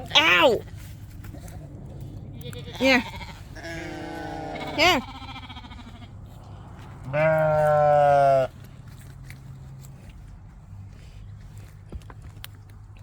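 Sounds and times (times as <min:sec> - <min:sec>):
sheep or goat bleating: 0:02.3 - 0:06.4, 0:07.0 - 0:08.6.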